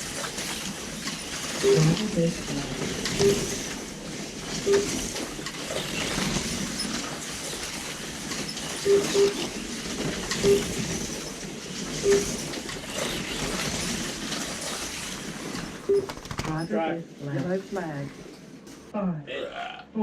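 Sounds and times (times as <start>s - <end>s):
slot cars whirring: 0.0s - 18.9s
short electronic beeps: 1.6s - 2.1s, 3.2s - 3.6s, 4.6s - 5.0s, 8.8s - 9.4s, 10.4s - 10.8s, 12.0s - 12.4s.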